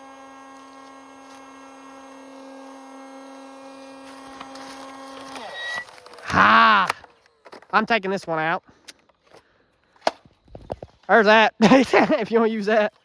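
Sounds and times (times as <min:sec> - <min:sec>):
electric motor hum: 0:00.0 - 0:07.4.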